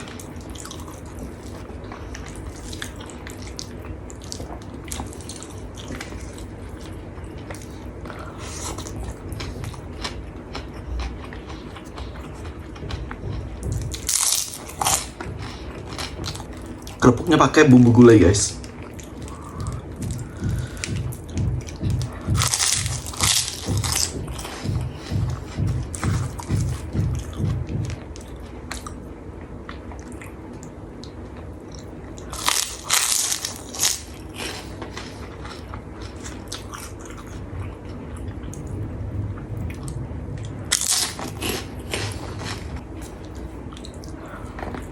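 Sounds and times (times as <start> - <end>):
cracker crunching: 0.0 - 17.4, 18.6 - 29.0, 29.6 - 38.8, 39.4 - 44.9
close chewing of food: 0.0 - 44.9.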